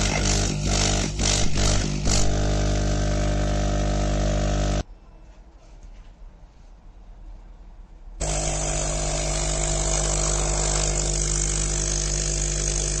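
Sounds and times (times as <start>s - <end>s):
air pump buzzing hum: 0.0s - 4.8s, 8.2s - 13.0s.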